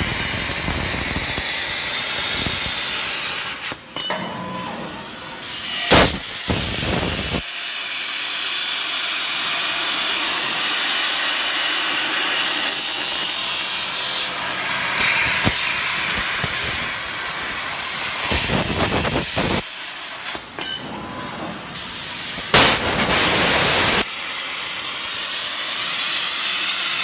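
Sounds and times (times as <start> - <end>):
plasma torch hissing: 0.0 - 3.9, 5.1 - 8.6, 9.9 - 20.5, 21.6 - 27.0
sharp loud burst: 22.5 - 24.0.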